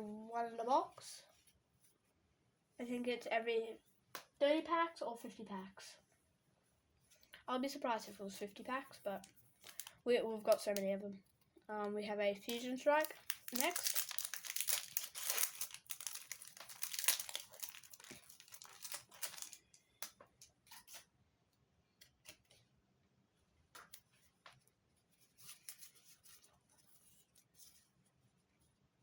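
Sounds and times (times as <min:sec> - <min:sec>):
foil wrapper tearing and crinkling: 0:09.6 - 0:10.0, 0:12.5 - 0:19.8.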